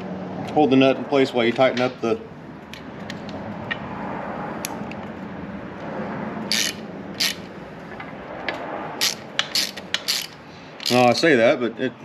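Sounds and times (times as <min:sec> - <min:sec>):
sharp ratchet rasps: 0:06.4 - 0:07.5, 0:09.0 - 0:11.2
ratchet tightening bolt: 0:06.5 - 0:07.5, 0:09.0 - 0:11.2.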